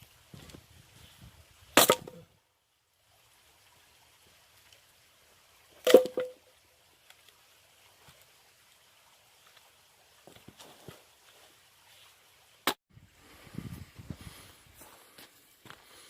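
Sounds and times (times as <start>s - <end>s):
axe splitting firewood: 1.8s - 2.2s.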